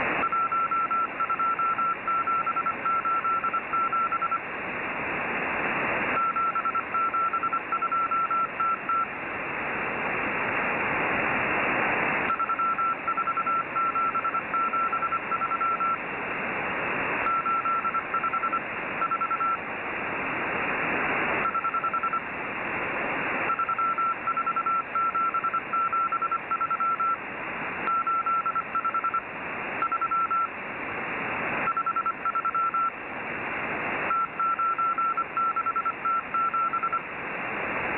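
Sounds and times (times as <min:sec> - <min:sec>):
radio static hiss: 0:00.0 - 0:37.9
morse code tone: 0:00.2 - 0:04.4, 0:06.2 - 0:09.0, 0:12.3 - 0:16.0, 0:17.2 - 0:19.6, 0:21.4 - 0:22.2, 0:23.5 - 0:27.2, 0:27.9 - 0:29.2, 0:29.8 - 0:30.5, 0:31.7 - 0:32.9, 0:34.1 - 0:37.0.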